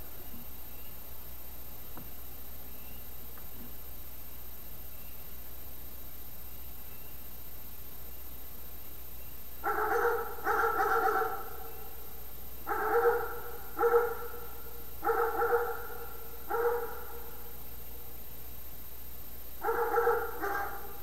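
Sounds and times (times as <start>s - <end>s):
dog barking: 9.6s - 11.9s, 12.6s - 17.4s, 19.6s - 21.0s.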